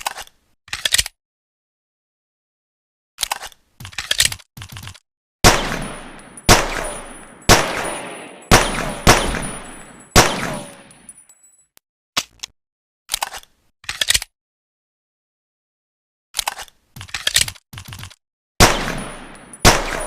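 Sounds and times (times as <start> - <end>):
pistol gunshots echoing: 5.4 - 11.1, 18.6 - 20.0.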